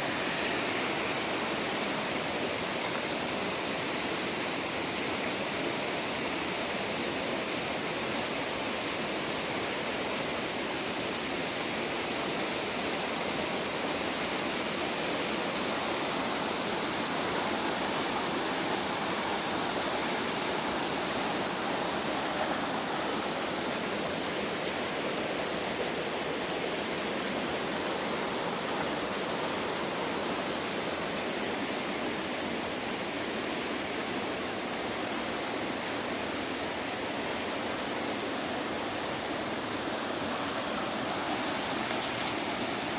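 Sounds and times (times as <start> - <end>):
stream water rushing: 0.0 - 42.9.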